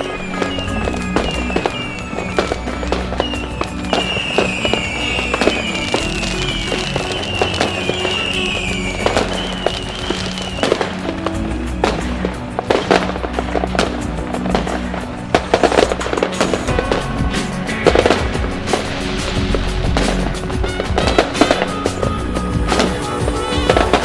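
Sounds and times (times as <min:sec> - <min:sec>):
short falling whistles: 0:00.0 - 0:12.1
background music: 0:00.0 - 0:24.0
distant fireworks popping: 0:00.0 - 0:24.0.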